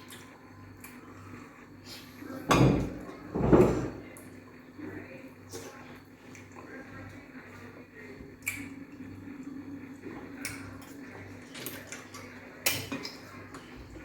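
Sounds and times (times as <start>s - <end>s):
steady low hum: 0.0s - 14.0s
dishes clinking: 2.5s - 4.1s.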